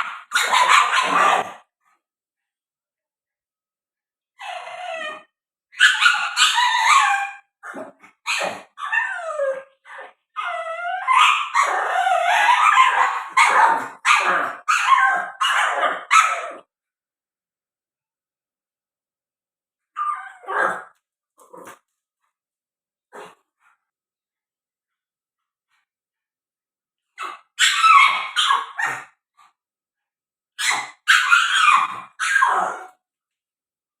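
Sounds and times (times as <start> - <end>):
dog barking whining and howling: 0.0 - 1.6, 4.4 - 16.7, 19.9 - 21.0, 27.1 - 29.2, 30.6 - 33.0.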